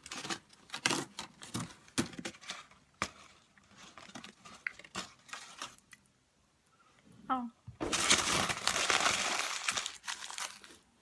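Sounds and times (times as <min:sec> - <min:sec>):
food packaging crinkling: 0:07.8 - 0:10.9.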